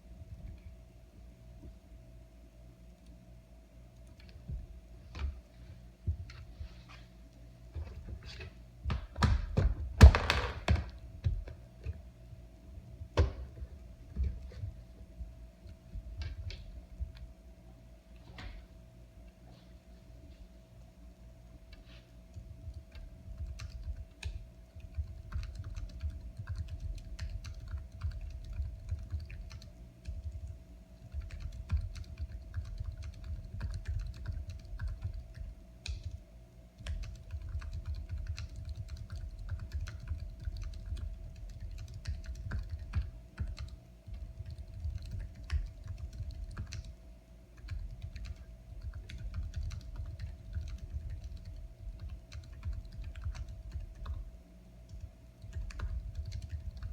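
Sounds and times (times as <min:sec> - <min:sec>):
faint steady hum: 0:00.0 - 0:56.9
fast typing on keyboard: 0:22.3 - 0:36.2, 0:36.8 - 0:47.0, 0:47.6 - 0:54.2, 0:54.9 - 0:56.9.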